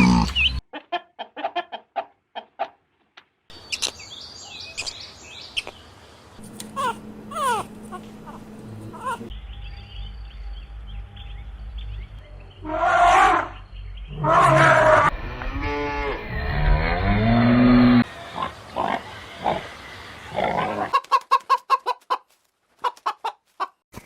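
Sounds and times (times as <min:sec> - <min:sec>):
chicken clucks: 0:00.7 - 0:02.8, 0:06.5 - 0:09.3, 0:20.8 - 0:23.8
livestock calls: 0:06.5 - 0:09.3.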